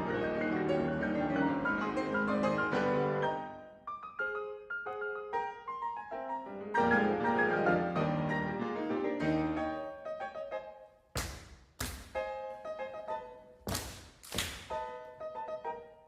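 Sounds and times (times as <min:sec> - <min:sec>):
ragtime piano ensemble: 0:00.0 - 0:10.8.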